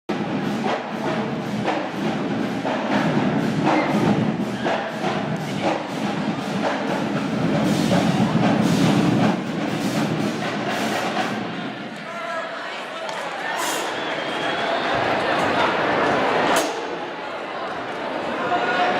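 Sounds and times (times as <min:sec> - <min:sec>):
music with fast percussive beat: 0:00.1 - 0:11.5.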